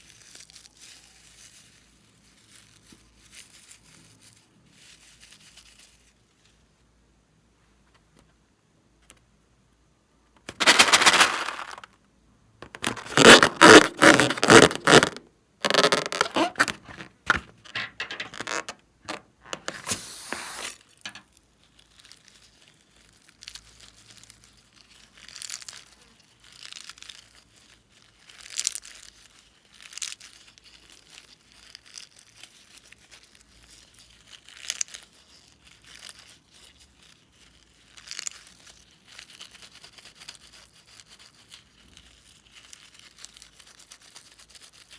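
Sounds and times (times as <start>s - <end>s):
balloon crinkling: 10.4s - 12.0s, 12.6s - 21.2s
slime squishing: 12.6s - 20.7s.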